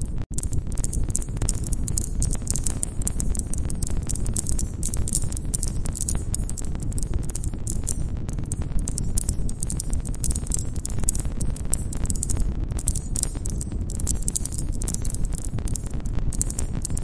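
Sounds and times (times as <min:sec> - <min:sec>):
low rumble of flames: 0:00.1 - 0:17.0
campfire crackling and popping: 0:00.3 - 0:17.0.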